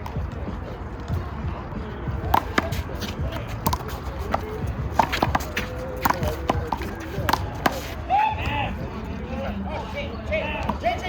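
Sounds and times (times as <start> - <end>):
rubber handball hitting wall: 2.2 - 7.8.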